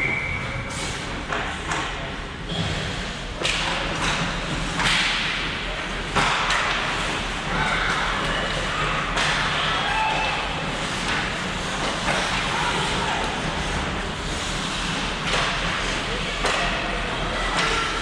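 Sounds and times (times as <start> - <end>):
hockey sticks and puck cracking: 3.4 - 5.4, 6.1 - 17.0.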